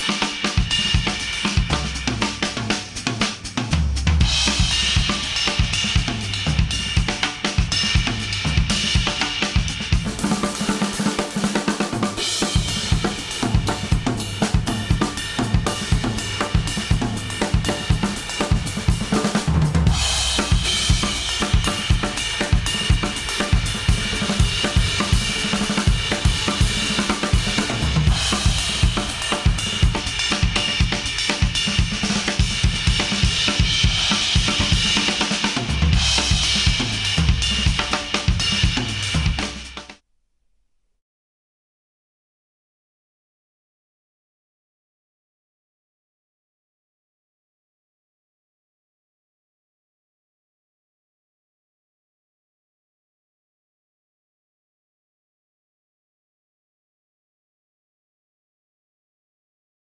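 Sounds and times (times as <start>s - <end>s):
instrumental track with drum kit: 0.0s - 40.0s.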